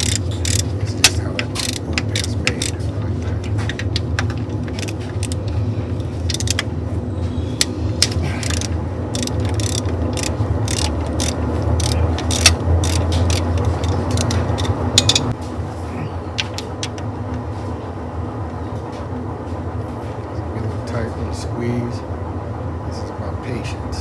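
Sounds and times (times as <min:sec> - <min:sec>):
ratchet wrench clicking: 0:00.0 - 0:02.9, 0:03.5 - 0:06.7, 0:07.6 - 0:15.4
steady low hum: 0:00.0 - 0:24.0.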